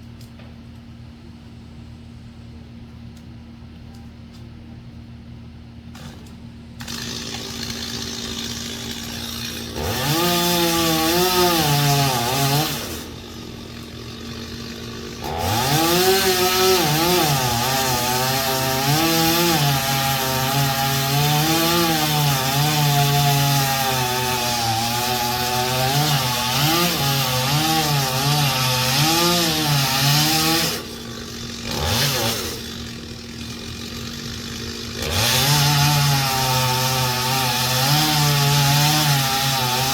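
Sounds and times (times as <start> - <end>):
steady low hum: 0.0 - 6.8
chainsaw revving and cutting wood: 6.8 - 39.9.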